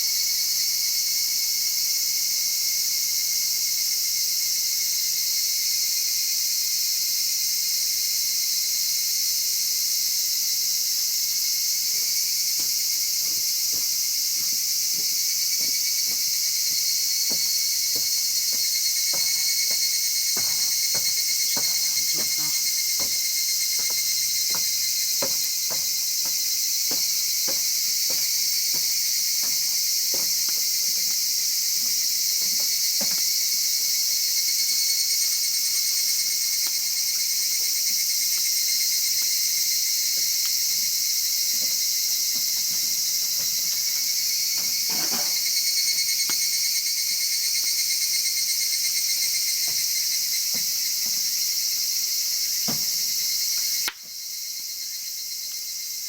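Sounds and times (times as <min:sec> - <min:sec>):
crickets trilling: 0:00.0 - 0:56.0
wood fire crackling and popping: 0:12.6 - 0:33.3.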